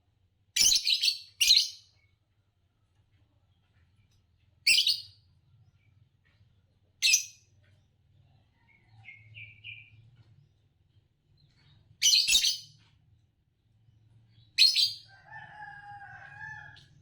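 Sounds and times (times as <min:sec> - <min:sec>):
lovebird chirping: 0:00.6 - 0:01.9, 0:04.7 - 0:05.1, 0:07.0 - 0:07.4, 0:12.0 - 0:12.7.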